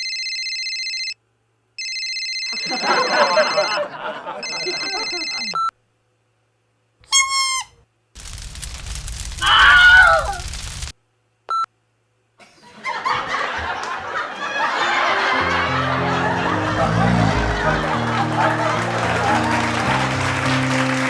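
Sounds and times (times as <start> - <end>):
short squeaky pitched sound: 7.1 - 7.8
person screaming: 9.4 - 10.4.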